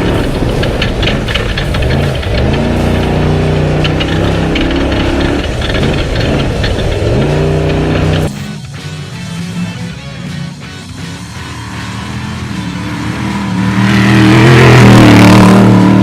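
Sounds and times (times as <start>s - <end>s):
knocks and rattles: 0.0s - 8.7s
truck engine running hard: 0.0s - 16.0s.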